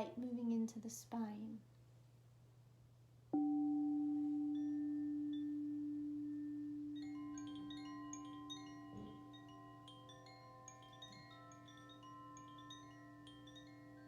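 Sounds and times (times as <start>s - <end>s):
singing bowl ringing: 3.4s - 14.0s
wind chimes tinkling: 3.4s - 14.0s.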